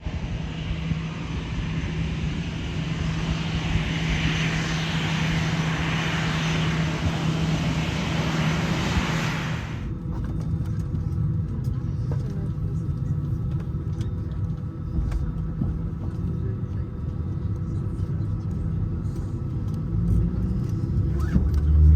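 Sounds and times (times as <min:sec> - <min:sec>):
airliner cabin roar: 0:00.0 - 0:11.3.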